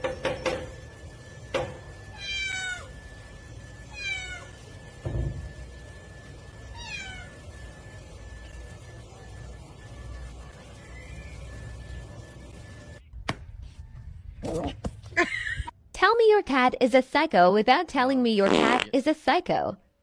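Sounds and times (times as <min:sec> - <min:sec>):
cat meowing: 0:03.9 - 0:04.6.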